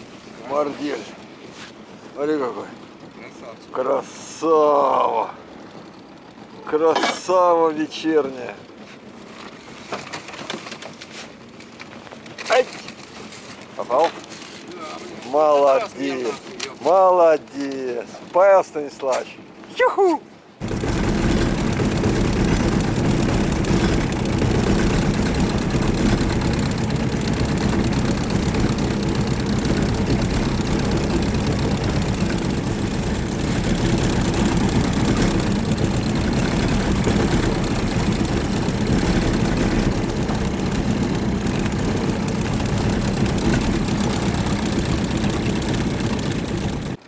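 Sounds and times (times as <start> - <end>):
outboard motor running: 0.0 - 10.8, 20.6 - 47.0.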